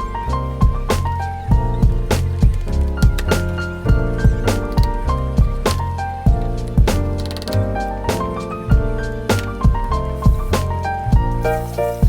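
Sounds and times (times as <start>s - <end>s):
background music with steady beat: 0.0s - 12.0s
keyboard-like notes: 0.0s - 12.0s.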